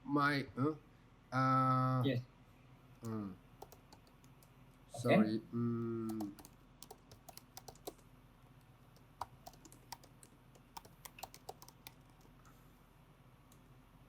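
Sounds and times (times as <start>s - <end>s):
faint keyboard typing: 3.0s - 4.6s, 5.7s - 12.6s.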